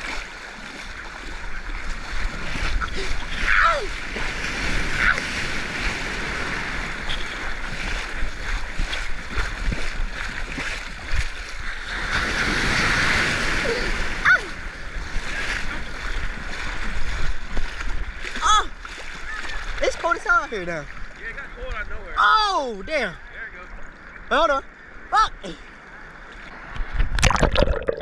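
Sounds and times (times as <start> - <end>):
wind rumbling on microphone: 0.0 - 19.8
ocean surf washing: 0.0 - 26.8.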